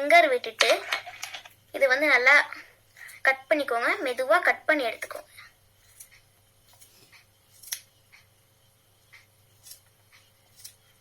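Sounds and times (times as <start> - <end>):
scissors snipping yarn: 5.8 - 7.9, 9.2 - 11.0.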